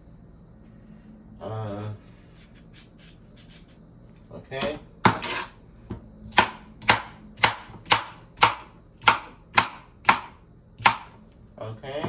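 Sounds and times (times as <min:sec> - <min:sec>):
knife chopping on cutting board: 0:04.6 - 0:11.2.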